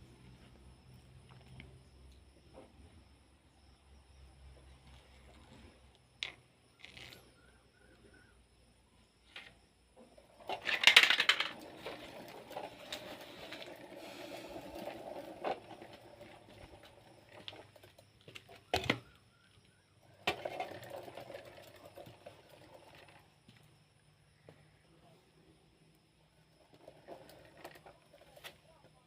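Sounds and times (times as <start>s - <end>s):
plastic toy vehicles rattling: 9.4s - 19.2s, 20.1s - 23.3s, 26.6s - 29.0s.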